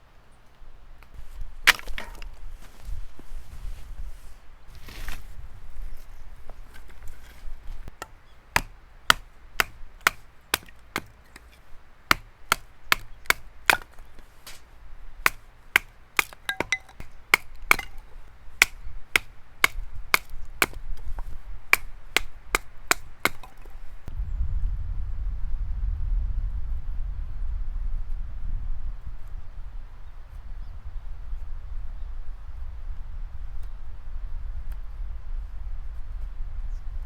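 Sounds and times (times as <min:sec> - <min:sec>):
firewood splitting knocks: 0:01.0 - 0:03.7, 0:04.7 - 0:24.1.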